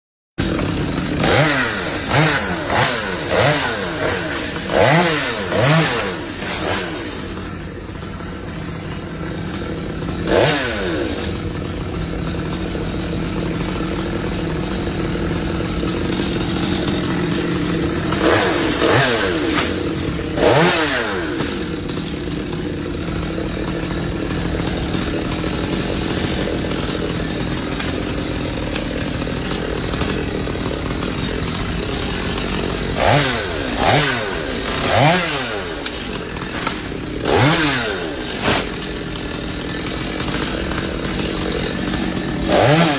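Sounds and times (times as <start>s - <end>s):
chainsaw idling: 0.4s - 42.9s
chainsaw throttle revs: 0.4s - 42.9s.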